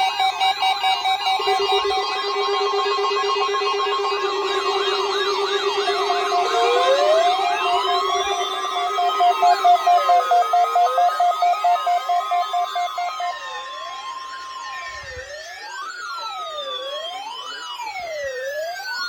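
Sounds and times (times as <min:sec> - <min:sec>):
steady warning tone: 0:00.0 - 0:14.2
electronic siren wailing: 0:00.0 - 0:19.0
two-tone alarm pulsing: 0:00.0 - 0:19.0.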